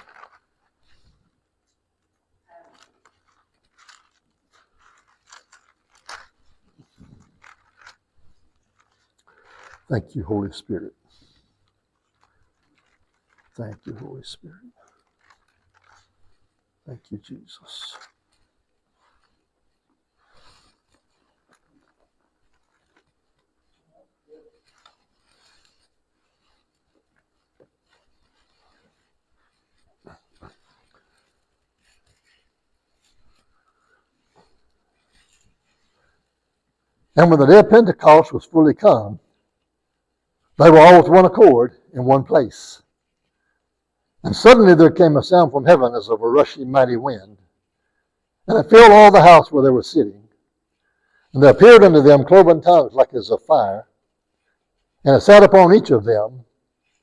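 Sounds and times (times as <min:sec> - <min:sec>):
faint rustling: 0:00.0 - 0:37.6, 0:38.8 - 0:40.7, 0:42.7 - 0:44.3, 0:47.2 - 0:48.6, 0:50.2 - 0:51.4, 0:53.0 - 0:55.1, 0:56.0 - 0:57.0
paper pages turning: 0:00.0 - 0:38.0.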